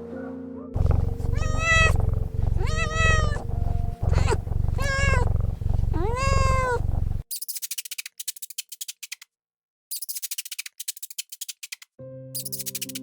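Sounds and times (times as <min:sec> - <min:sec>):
cat meowing: 0:00.8 - 0:07.2
low rumble: 0:00.8 - 0:07.2.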